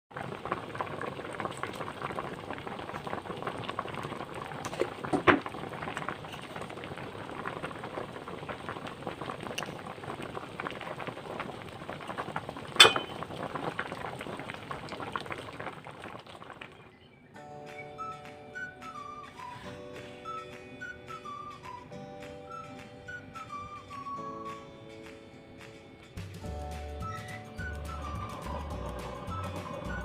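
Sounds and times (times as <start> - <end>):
liquid bubbling in a pot: 0.1 - 17.1.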